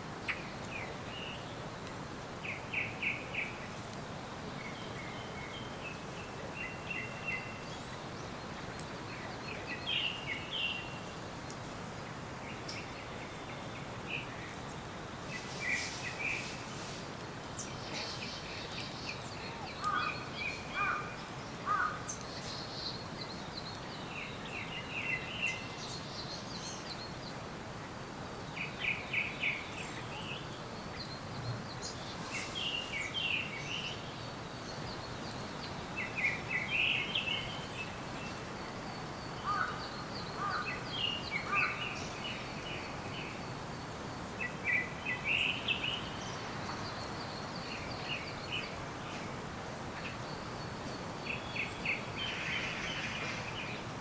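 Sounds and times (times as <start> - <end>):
outdoor ambience hiss: 0.0 - 54.0
birds chirping and calling: 17.7 - 27.1, 28.7 - 43.5.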